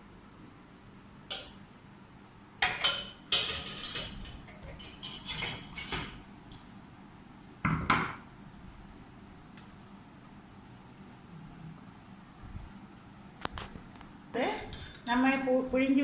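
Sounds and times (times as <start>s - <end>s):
kitchen utensils clattering: 2.6s - 6.2s, 14.4s - 15.3s.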